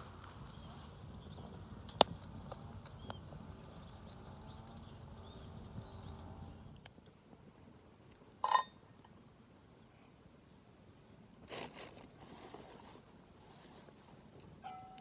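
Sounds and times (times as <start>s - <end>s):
soft scrape or rustle: 10.8s - 14.5s.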